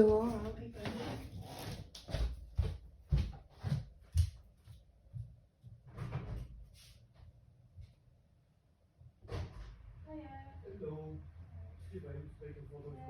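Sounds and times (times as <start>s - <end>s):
dull household thumps: 5.2s - 6.6s.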